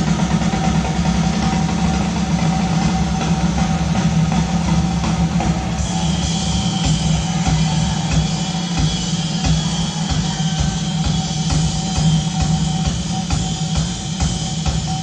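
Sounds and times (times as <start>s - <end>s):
drum kit: 0.0s - 15.0s
hard rock band playing: 0.0s - 15.0s
held high note: 5.8s - 14.2s.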